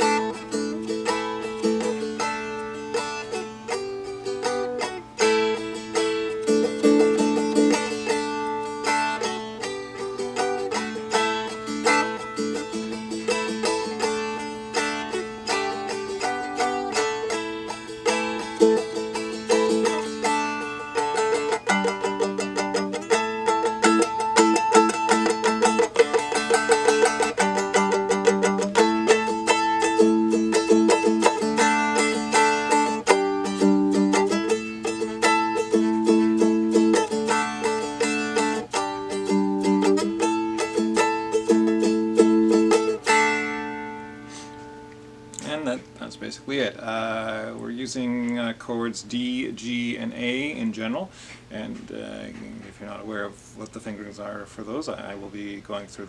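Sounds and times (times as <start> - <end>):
dulcimer strummed and picked: 0.0 - 56.0.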